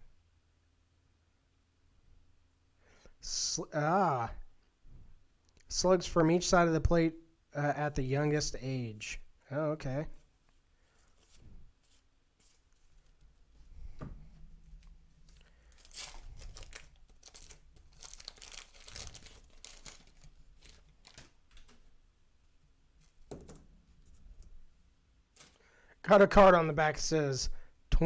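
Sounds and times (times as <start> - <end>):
baseball cards rustling: 10.2 - 13.4, 14.0 - 22.0, 25.3 - 25.8.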